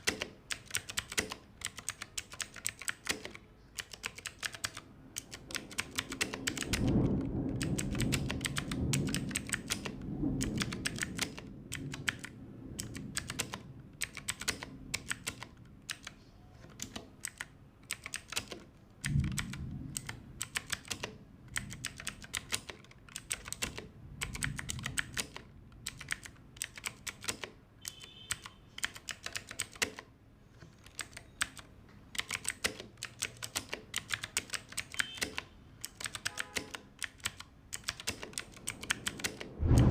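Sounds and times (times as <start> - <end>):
mechanical keyboard typing: 0.0 - 30.1, 30.8 - 39.5
heavy low thuds: 39.6 - 39.9.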